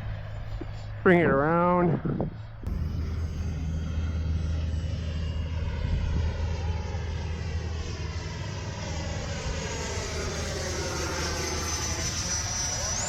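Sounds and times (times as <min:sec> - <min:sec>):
high fan whine: 0:00.0 - 0:13.0
model jet fan rushing: 0:02.6 - 0:13.0.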